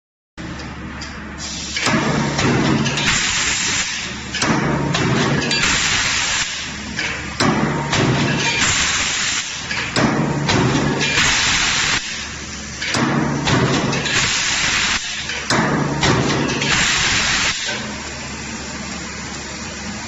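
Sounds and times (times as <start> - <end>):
hissing bursts: 14.1 - 15.1, 16.7 - 17.7.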